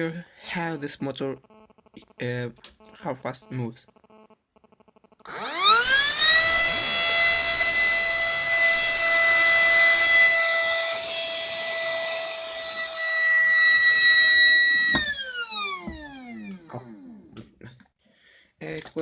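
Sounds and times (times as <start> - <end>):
electric motor high-pitched whine: 5.3 - 17.4.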